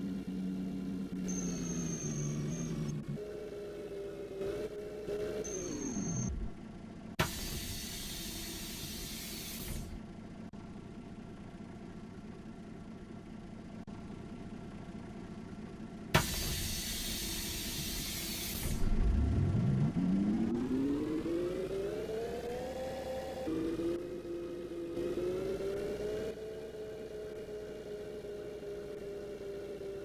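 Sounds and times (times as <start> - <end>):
bus idle hum: 0.0 - 19.9, 21.5 - 30.0
bus drive whine: 0.0 - 30.0
pneumatic air hiss: 7.2 - 10.0, 16.2 - 18.8.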